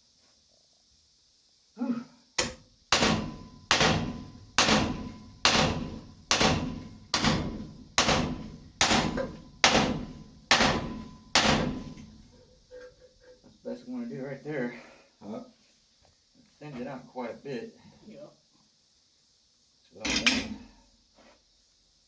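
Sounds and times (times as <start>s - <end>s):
hammer striking steel on anvil: 2.4s - 12.2s.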